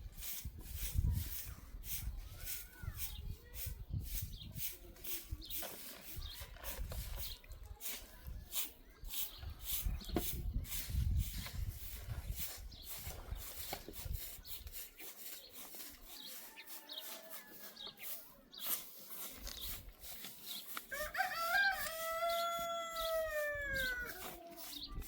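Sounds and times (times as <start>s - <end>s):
rooster crowing: 20.9s - 24.1s.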